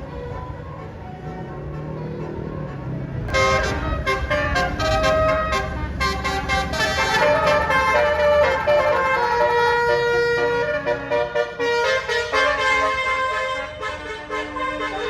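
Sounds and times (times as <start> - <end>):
bus diesel engine rumbling: 0.0 - 15.0
multi-tone horn playing tune: 3.3 - 15.0.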